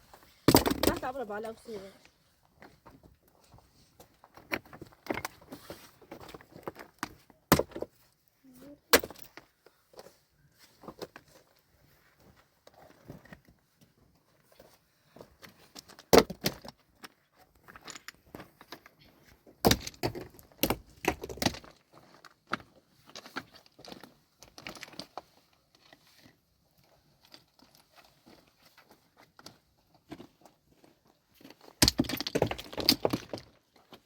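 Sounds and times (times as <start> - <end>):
hard objects knocking and clinking: 31.8 - 33.5.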